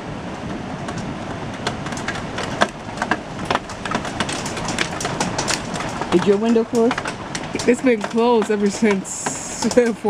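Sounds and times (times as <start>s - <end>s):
hail falling: 0.3s - 10.0s
hailstones ticking on hard surfaces: 0.4s - 10.0s.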